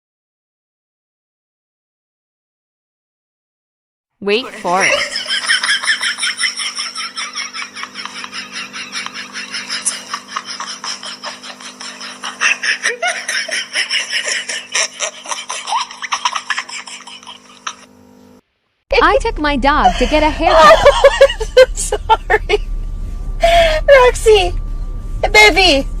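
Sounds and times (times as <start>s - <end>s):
person laughing hard: 4.5s - 17.9s, 19.8s - 22.7s, 23.4s - 23.8s
low steady hum: 18.9s - 26.0s.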